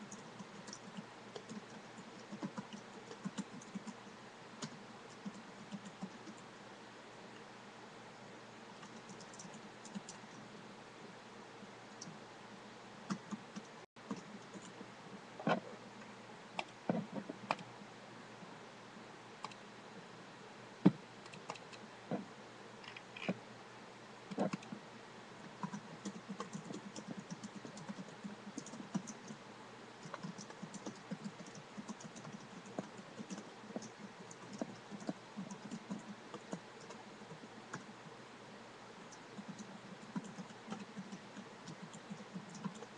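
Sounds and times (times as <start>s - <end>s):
typing on computer keyboard: 0.0s - 4.0s, 4.6s - 6.4s, 8.8s - 10.3s, 25.6s - 29.4s, 30.0s - 37.0s, 39.1s - 42.9s.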